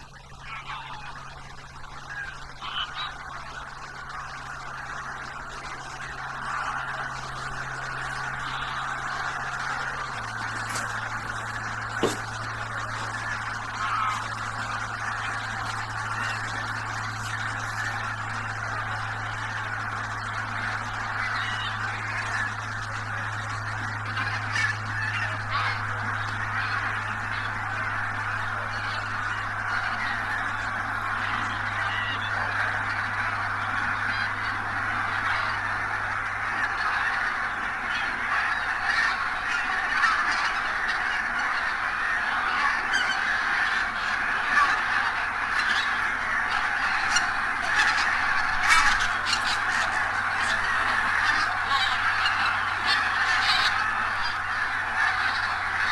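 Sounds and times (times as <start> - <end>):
geese honking: 0.0 - 55.9.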